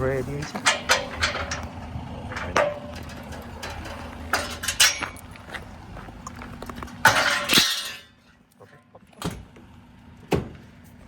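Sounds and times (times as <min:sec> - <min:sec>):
vehicle engine humming: 0:00.0 - 0:11.0
scrap metal scraping clatter: 0:00.1 - 0:08.4
scrap metal clunks: 0:00.3 - 0:05.5, 0:06.4 - 0:08.4.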